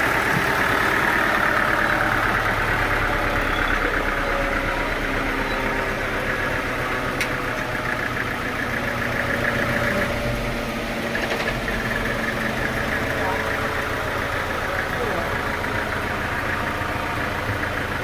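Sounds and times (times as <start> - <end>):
sawmill machinery humming: 0.0 - 18.0.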